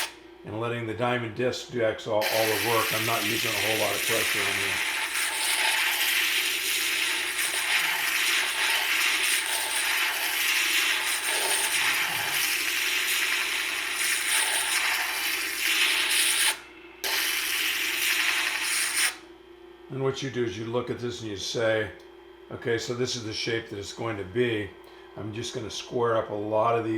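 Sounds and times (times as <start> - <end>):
gritty grinding hiss: 2.2 - 19.2.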